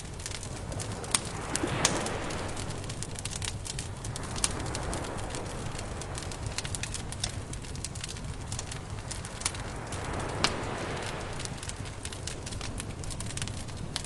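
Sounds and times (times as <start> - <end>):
campfire crackling and popping: 0.0 - 14.0
low steady rumble: 0.0 - 14.0
rushing hush: 1.2 - 3.2.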